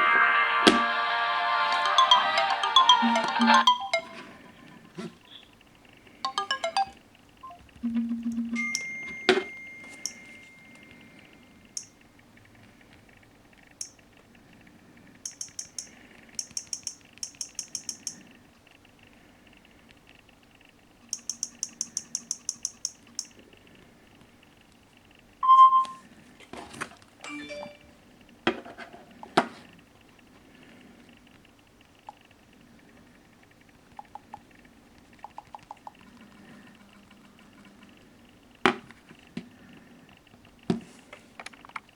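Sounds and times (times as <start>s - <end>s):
faint steady hum: 0.0s - 41.9s
soft ticks: 15.2s - 23.5s.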